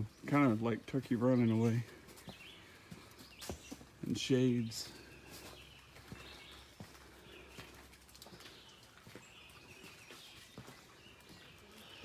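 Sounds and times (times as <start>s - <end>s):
distant birds calling: 0.0s - 12.0s
soft footsteps on a trail: 0.0s - 12.0s.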